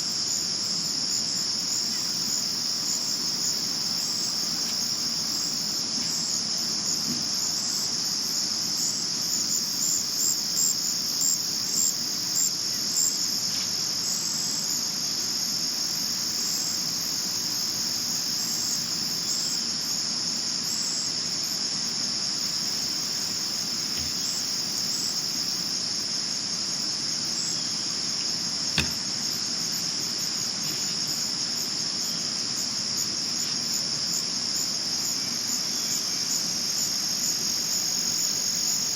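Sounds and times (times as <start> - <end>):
crickets chirping: 0.0 - 38.9
short sharp click: 28.8 - 29.0.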